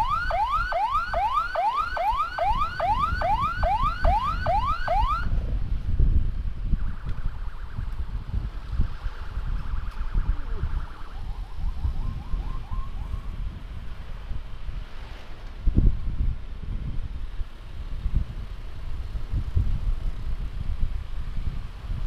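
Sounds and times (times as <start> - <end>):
faint electronic siren: 0.0 - 5.4, 6.6 - 13.4
wind rumbling on microphone: 0.0 - 22.0.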